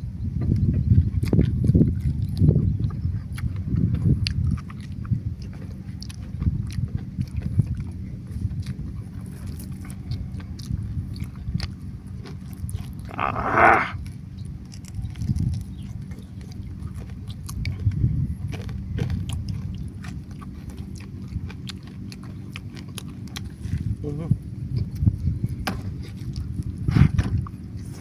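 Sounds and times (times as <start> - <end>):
chewing crispy food: 3.2 - 13.9, 14.7 - 23.7.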